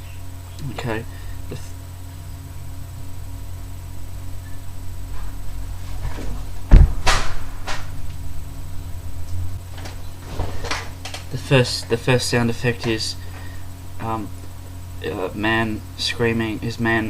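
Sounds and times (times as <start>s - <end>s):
low electrical hum: 0.0s - 17.0s
loud thump: 5.2s - 8.0s.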